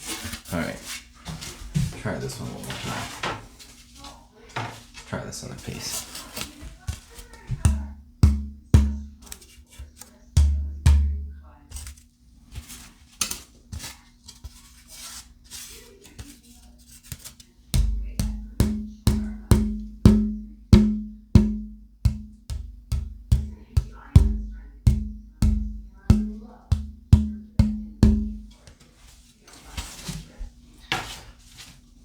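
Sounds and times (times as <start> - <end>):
wood tapping with ringing tone: 7.6 - 9.2, 17.8 - 28.6.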